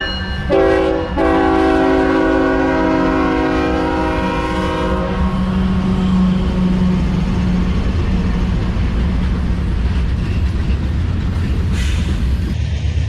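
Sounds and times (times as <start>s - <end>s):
locomotive air horn chord: 0.0s - 6.8s
diesel locomotive rumble: 0.0s - 13.0s.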